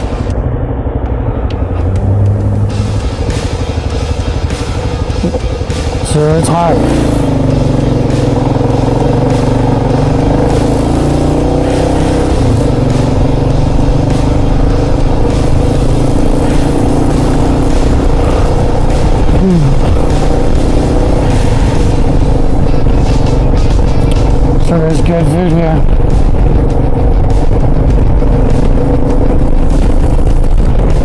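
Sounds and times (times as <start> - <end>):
motorcycle engine running: 0.0 - 31.0
heavy wind noise: 17.6 - 31.0.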